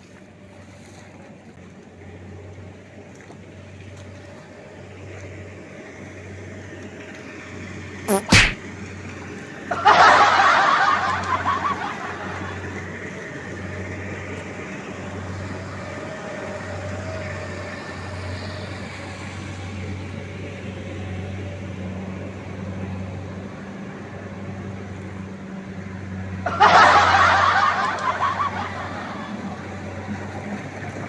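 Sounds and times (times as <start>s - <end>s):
loud rushing burst: 8.1s - 8.6s
harvester engine humming: 11.1s - 31.0s.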